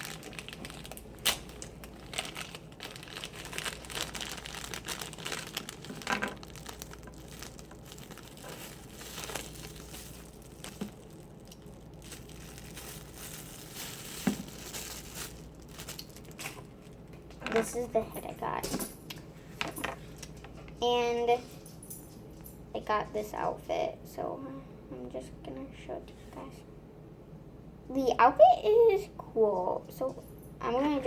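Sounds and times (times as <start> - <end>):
plastic packaging crinkling and tearing: 0.0 - 18.4.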